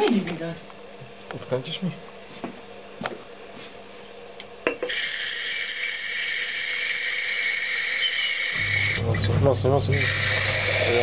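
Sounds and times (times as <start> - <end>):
water running from tap: 9.9 - 11.0.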